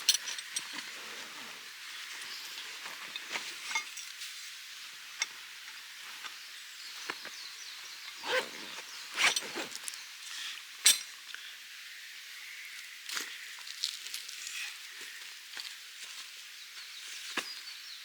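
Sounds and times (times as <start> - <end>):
faint steady hiss: 0.0 - 18.0
clinks and short knocks: 3.1 - 4.1.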